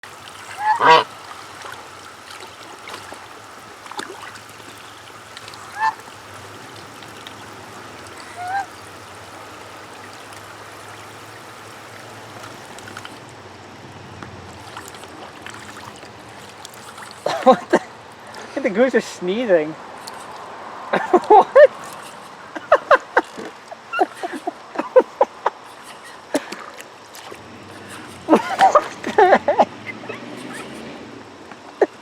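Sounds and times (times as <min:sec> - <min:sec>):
goose honking: 0:00.4 - 0:01.2, 0:05.5 - 0:06.2, 0:07.9 - 0:09.4.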